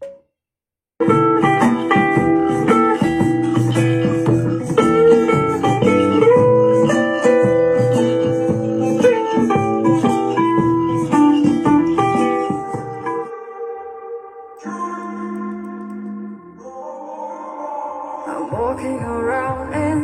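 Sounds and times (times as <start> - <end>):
guitar music through speaker: 1.0 - 16.7.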